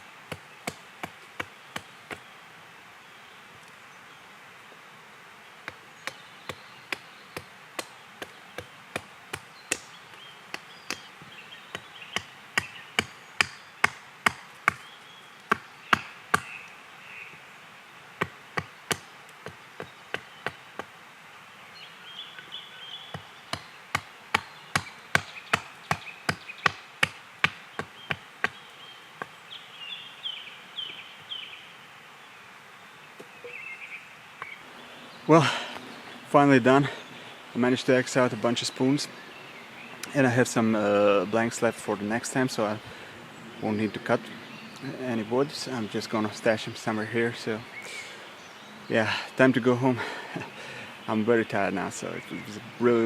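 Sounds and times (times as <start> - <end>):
axe chopping wood: 6.9 - 11.0, 12.2 - 14.8, 23.5 - 28.6.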